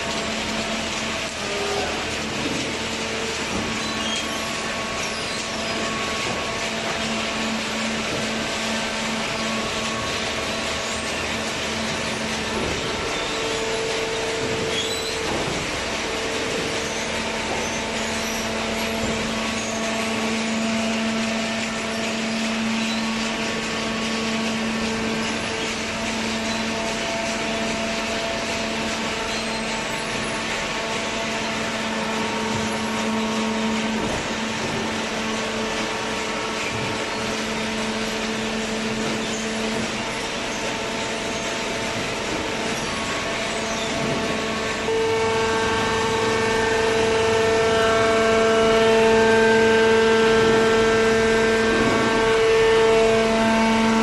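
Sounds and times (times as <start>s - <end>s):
baler machine drone: 0.0s - 54.0s
low motor hum: 0.0s - 54.0s.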